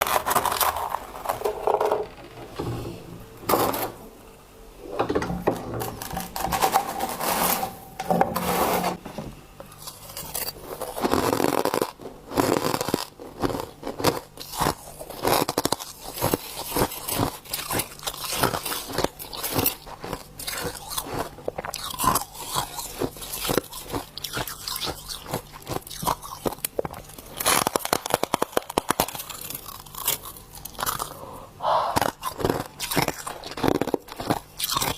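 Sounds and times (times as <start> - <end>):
person chewing crunchy ice: 0.0 - 1.7, 9.7 - 34.9.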